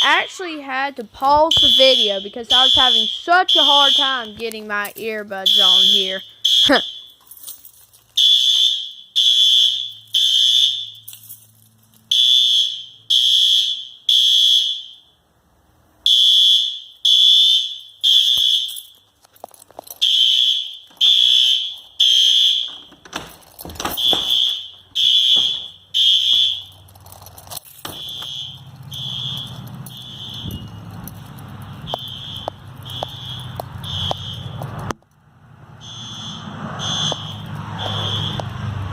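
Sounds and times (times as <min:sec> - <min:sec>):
fire alarm beeping: 0:01.5 - 0:04.4, 0:05.4 - 0:07.2, 0:08.2 - 0:11.1, 0:12.1 - 0:15.2, 0:16.1 - 0:19.2, 0:20.0 - 0:26.9, 0:27.8 - 0:31.0, 0:31.8 - 0:34.7, 0:35.8 - 0:38.5
rustling: 0:07.0 - 0:08.2, 0:17.8 - 0:34.9.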